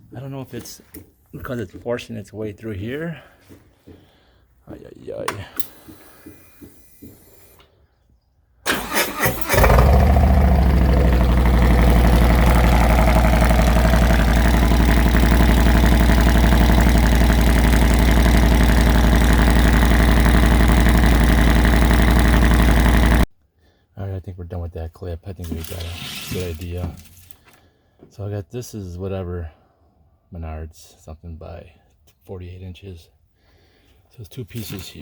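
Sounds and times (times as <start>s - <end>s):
motorcycle starter cranking: 8.7s - 23.2s
motorcycle engine idling loudly: 9.3s - 23.3s.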